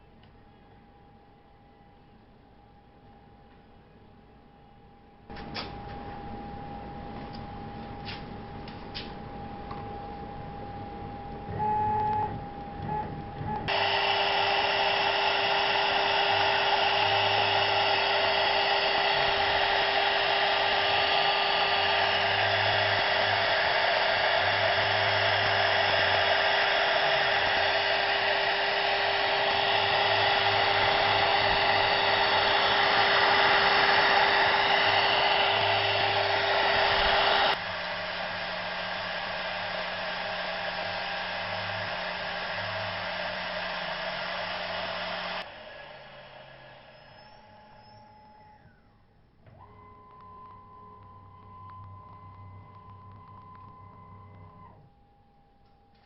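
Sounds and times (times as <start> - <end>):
router spindle whine milling wood: 12.9 - 48.9, 49.5 - 54.9.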